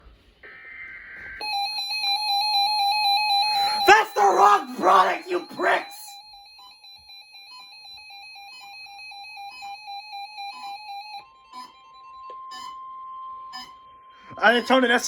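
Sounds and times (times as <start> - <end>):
steady alert tone: 3.6 - 6.1.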